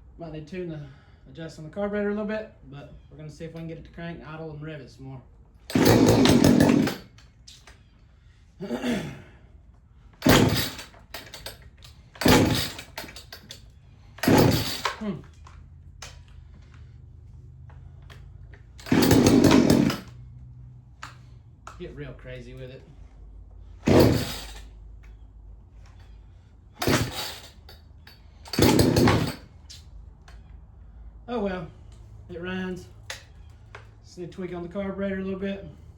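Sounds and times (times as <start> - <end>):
chainsaw recoil cord pulls: 5.7 - 7.8, 10.2 - 17.0, 17.8 - 20.3, 23.7 - 25.2, 26.8 - 29.8.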